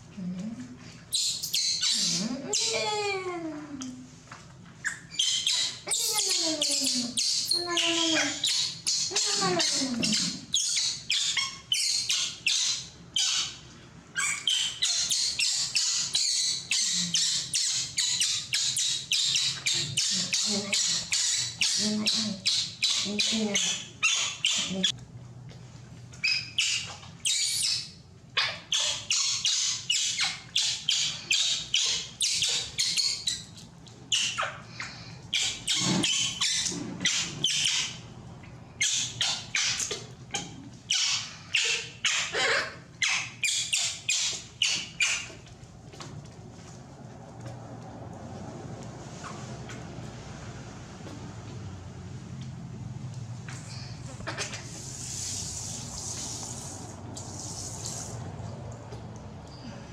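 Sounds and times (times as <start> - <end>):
baby monkey shrieking and crying: 1.1 - 3.1, 4.8 - 13.6, 14.2 - 25.0, 26.2 - 33.5, 34.1 - 34.6, 35.3 - 38.0, 38.8 - 45.4.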